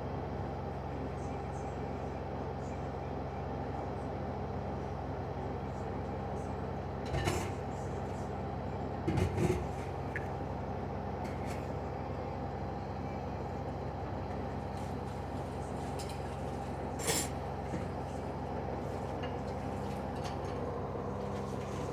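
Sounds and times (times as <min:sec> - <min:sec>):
washing machine spinning: 0:07.6 - 0:21.9.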